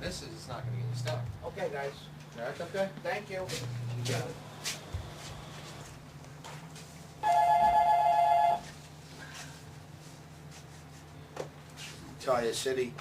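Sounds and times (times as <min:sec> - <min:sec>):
desk telephone electronic ring: 0:07.2 - 0:08.6.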